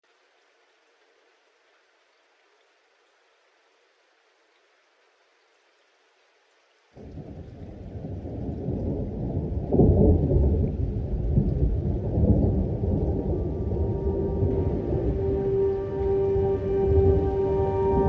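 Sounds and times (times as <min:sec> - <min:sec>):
thunder rumbling: 0:07.0 - 0:18.0.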